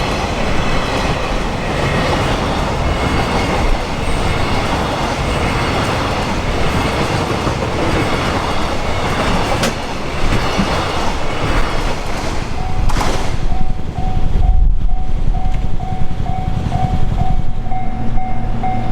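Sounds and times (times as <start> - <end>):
freight train wheels clattering: 0.0 - 18.9
level crossing bell ringing: 14.9 - 18.9.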